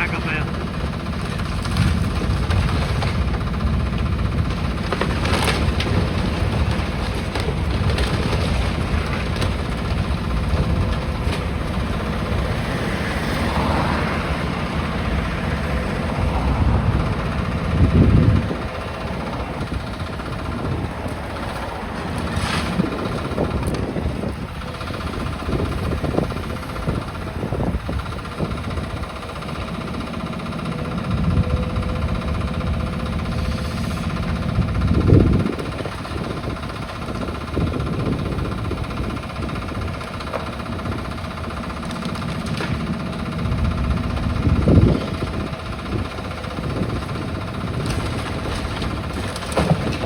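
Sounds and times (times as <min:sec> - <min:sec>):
excavator diesel engine running: 0:00.0 - 0:50.0
brickwork crunching and falling: 0:01.3 - 0:13.8, 0:46.6 - 0:50.0.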